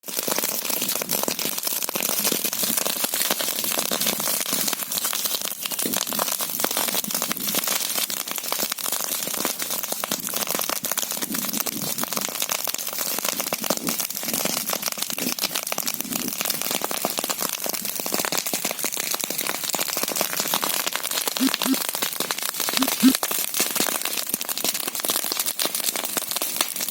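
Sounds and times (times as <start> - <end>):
wood fire crackling: 0.1 - 26.9.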